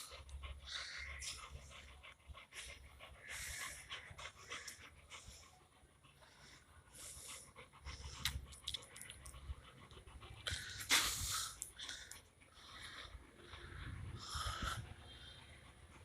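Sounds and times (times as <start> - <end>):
dog panting: 0.0 - 16.0.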